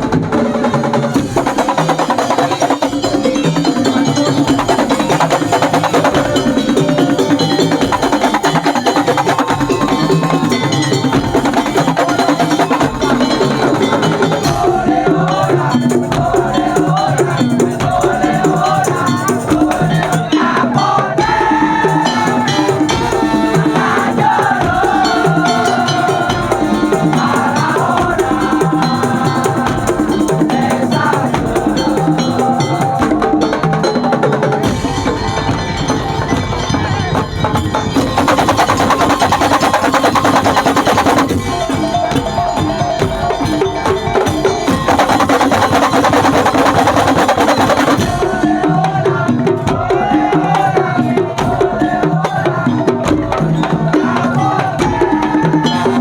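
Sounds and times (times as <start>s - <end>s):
slit drums and drums beating: 0.0s - 56.0s
wavering melody line: 1.2s - 15.0s.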